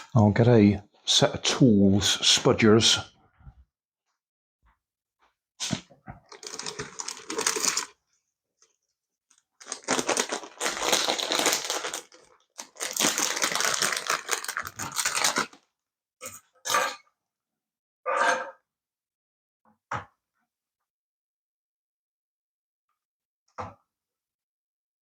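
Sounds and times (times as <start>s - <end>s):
rustling and scraping handling noise: 5.6s - 8.0s, 8.6s - 15.6s.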